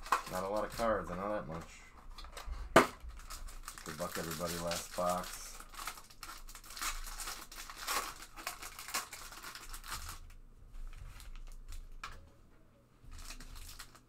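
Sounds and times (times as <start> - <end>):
plastic packaging crinkling and tearing: 0.0 - 2.4, 3.0 - 12.2, 13.1 - 14.0.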